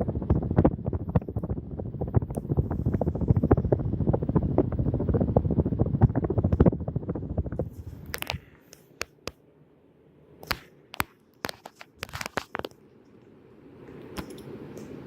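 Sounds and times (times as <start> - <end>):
low steady rushing noise: 0.0 - 8.1.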